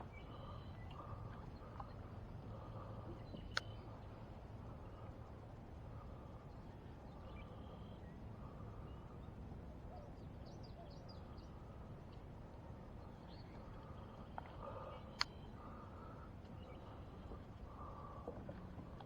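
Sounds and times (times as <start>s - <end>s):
faint outdoor background noise: 0.0s - 19.0s
distant birds chirping: 13.1s - 18.3s.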